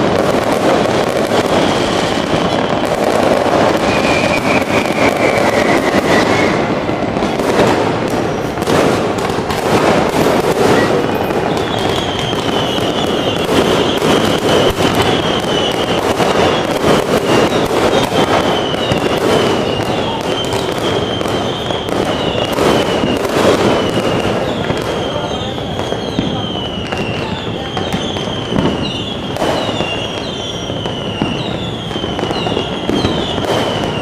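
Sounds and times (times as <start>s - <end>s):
fireworks bangs and crackles: 0.0s - 34.0s
high wavering whistle: 3.8s - 6.8s.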